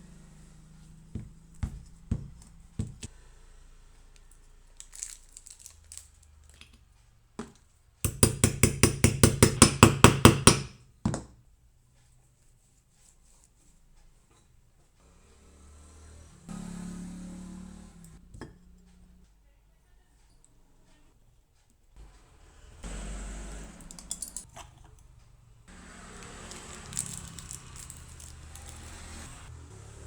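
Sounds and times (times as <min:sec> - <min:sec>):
sharp hammering knocks: 0:01.2 - 0:03.1, 0:08.1 - 0:11.3.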